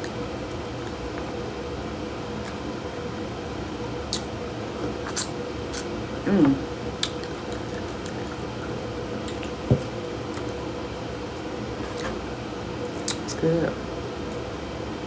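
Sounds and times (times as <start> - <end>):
person humming: 6.2 - 6.7
dull knock on table: 9.7 - 10.0.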